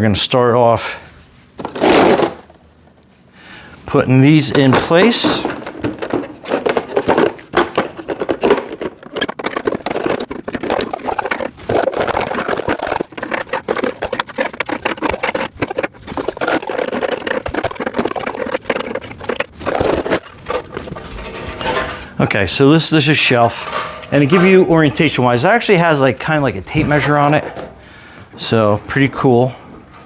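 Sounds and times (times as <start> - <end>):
clattering taps knocks and scrapes: 4.4 - 22.1, 23.4 - 26.1, 26.7 - 27.8.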